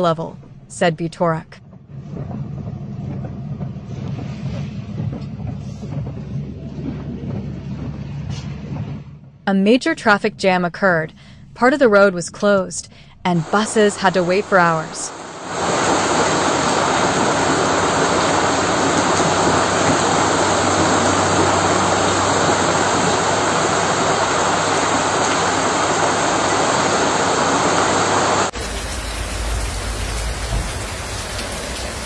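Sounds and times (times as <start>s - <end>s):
deep rumble: 0.0s - 32.0s
rushing floodwater: 13.5s - 32.0s.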